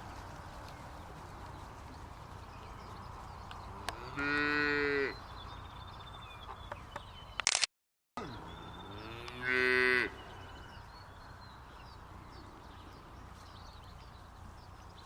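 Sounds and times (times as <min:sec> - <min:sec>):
cattle mooing: 0:03.8 - 0:05.2, 0:08.2 - 0:10.3.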